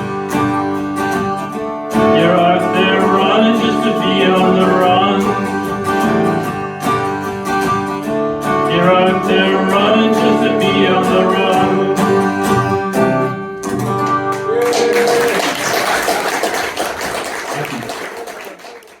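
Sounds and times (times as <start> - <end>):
acoustic guitar folk song: 0.0 - 14.5
audience applause: 14.0 - 19.0.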